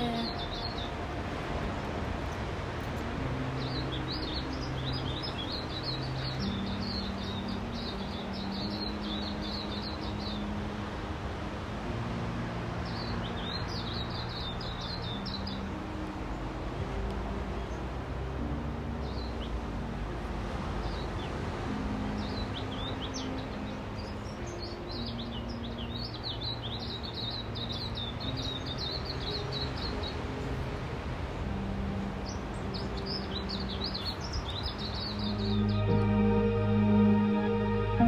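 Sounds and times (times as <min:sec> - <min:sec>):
background rush: 0:00.0 - 0:38.0.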